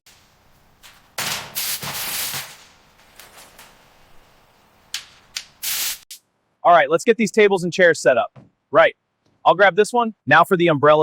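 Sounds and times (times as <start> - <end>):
short sharp bursts: 5.6 - 6.2.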